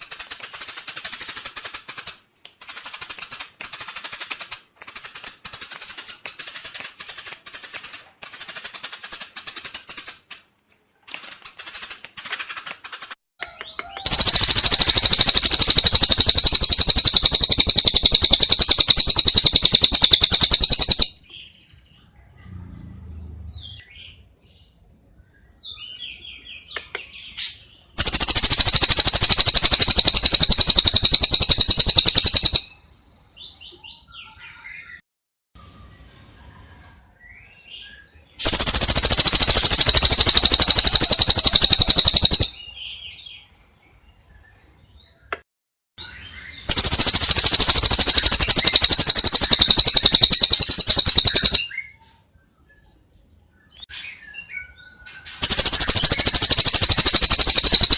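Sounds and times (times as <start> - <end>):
bird chirps and whistles: 13.5 - 21.3, 28.0 - 35.0, 38.4 - 42.8, 46.1 - 52.0, 53.7 - 57.9
loud buzzing bird trills: 14.1 - 21.2, 28.0 - 32.6, 38.4 - 42.6, 46.7 - 51.7, 55.4 - 57.9.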